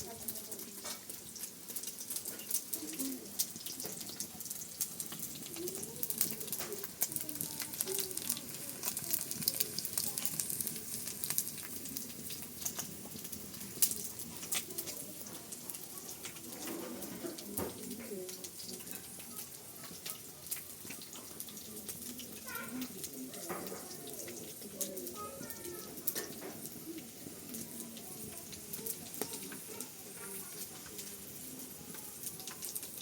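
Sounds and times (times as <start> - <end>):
food sizzling and crackling: 0.0 - 33.0.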